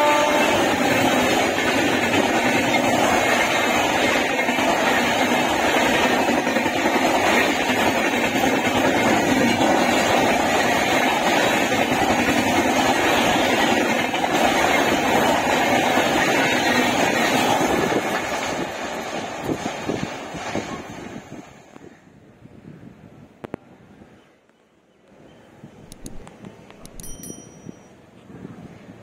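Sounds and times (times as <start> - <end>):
train wheels rumbling on rail: 0.0 - 21.9.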